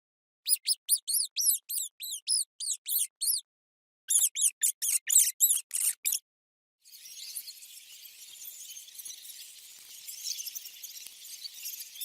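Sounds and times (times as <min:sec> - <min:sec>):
mouse squeaking: 0:00.5 - 0:03.4, 0:04.1 - 0:06.2, 0:08.2 - 0:12.0.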